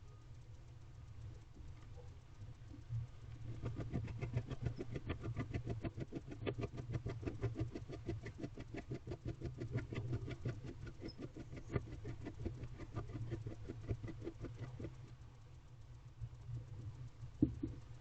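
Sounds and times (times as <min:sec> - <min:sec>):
steady low hum: 0:00.0 - 0:18.0
owl bill nibbling feathers: 0:03.4 - 0:15.0.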